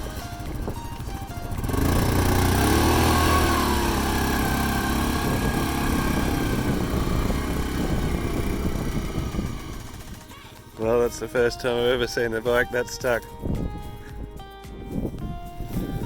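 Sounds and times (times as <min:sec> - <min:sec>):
motorbike engine revving: 0:00.1 - 0:10.8.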